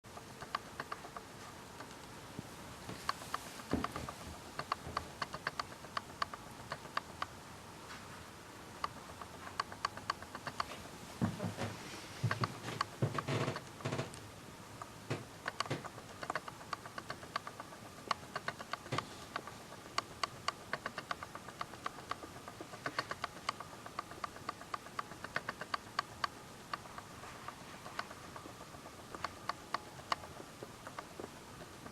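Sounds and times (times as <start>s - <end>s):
faint steady tone: 0.1s - 31.9s.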